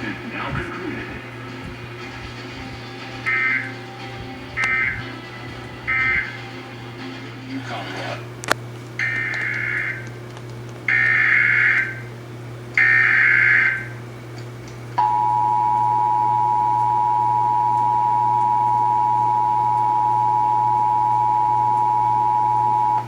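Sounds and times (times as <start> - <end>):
buzzy data bursts: 0.0 - 8.4, 9.0 - 10.1, 10.9 - 12.2
two-tone attention signal: 3.2 - 3.8, 4.6 - 5.1, 15.0 - 23.0.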